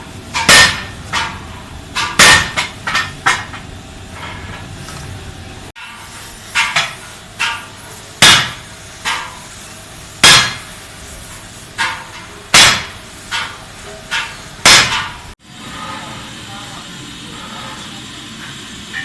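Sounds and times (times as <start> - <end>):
hammer striking metal: 0.3 - 4.6, 5.8 - 9.5, 10.2 - 10.8, 11.8 - 16.2.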